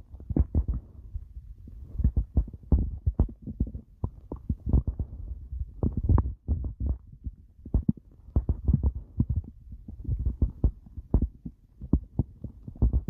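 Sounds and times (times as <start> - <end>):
stomach growling: 0.0 - 1.0, 1.7 - 13.0.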